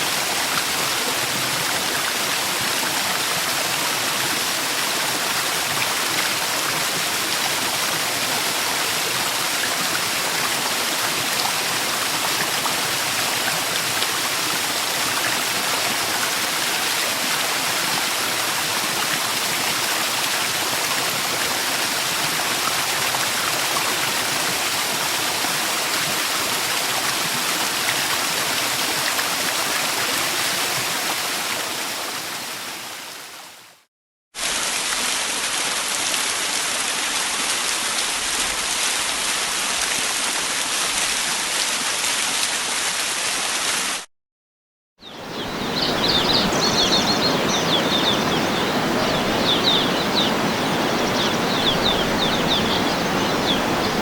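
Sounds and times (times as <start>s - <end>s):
waterfall rushing: 0.0s - 31.3s, 45.0s - 54.0s
small birds chirping: 45.0s - 54.0s.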